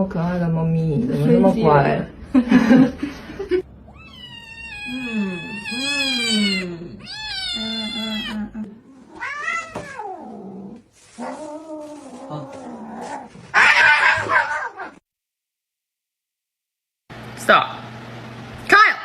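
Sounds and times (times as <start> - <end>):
cat yowling: 3.8 - 10.6, 11.2 - 15.0.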